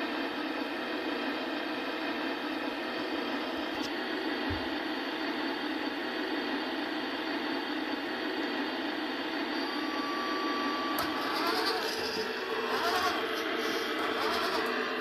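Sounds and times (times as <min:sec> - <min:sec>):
toy fire engine running: 0:10.2 - 0:15.0.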